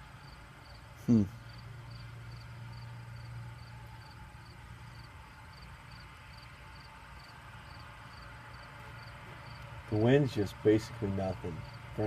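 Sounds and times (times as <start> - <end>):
cricket chirping: 1.4 - 9.7, 11.6 - 11.9.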